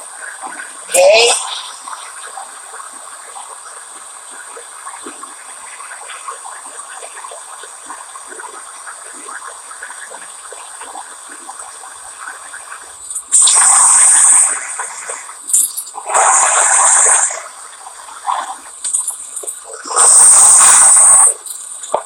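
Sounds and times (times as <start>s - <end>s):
gas torch flame hissing: 0.0s - 22.0s
loud hissing blast: 13.2s - 15.4s, 16.0s - 17.7s, 19.8s - 21.4s.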